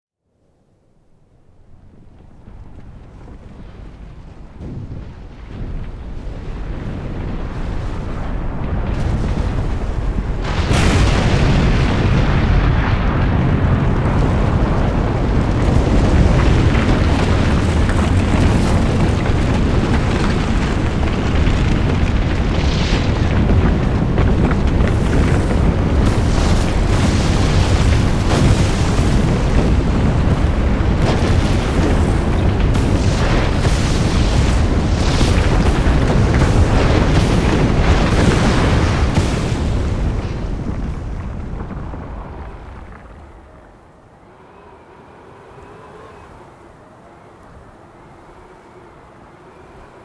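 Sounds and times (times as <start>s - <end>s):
volcanic eruption rumbling blast: 1.5s - 44.2s
sharp cracks and bursts: 7.1s - 43.7s.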